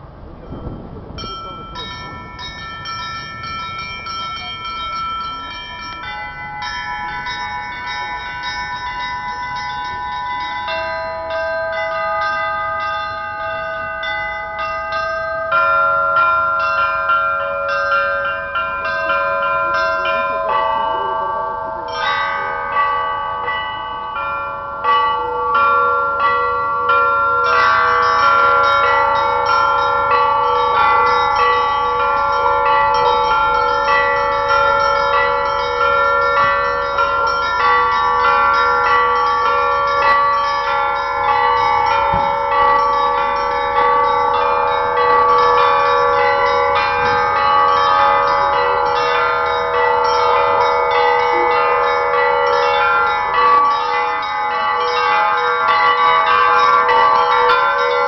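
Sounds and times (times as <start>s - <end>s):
church bells ringing: 0.0s - 58.0s
low large bells: 0.0s - 58.0s
small high bells chiming: 0.4s - 58.0s.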